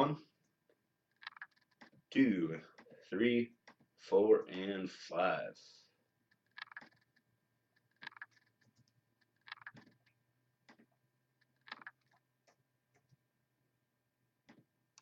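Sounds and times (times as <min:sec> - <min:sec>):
mouse and keyboard clicks: 0:01.1 - 0:02.0, 0:06.3 - 0:07.2, 0:07.8 - 0:13.2.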